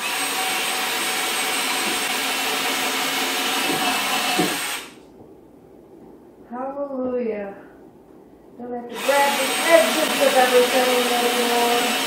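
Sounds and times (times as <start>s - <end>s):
power drill boring wood: 0.0s - 5.0s, 8.9s - 12.0s.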